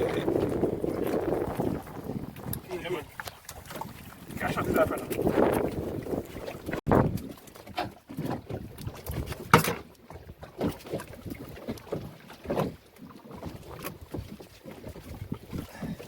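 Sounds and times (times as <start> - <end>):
wind gusts on microphone: 0.0 - 7.4
water splashing: 0.0 - 16.0.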